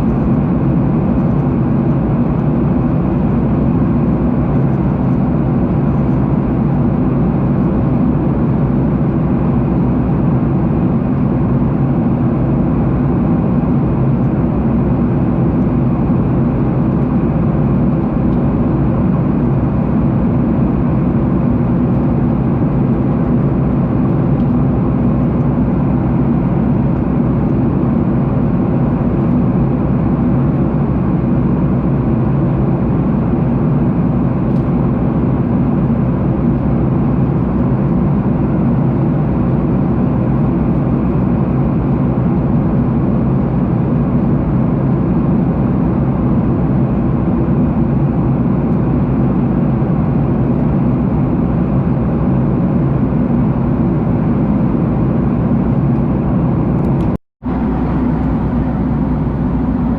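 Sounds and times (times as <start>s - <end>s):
jet engine drone: 0.0s - 59.9s
rushing air: 56.6s - 59.9s.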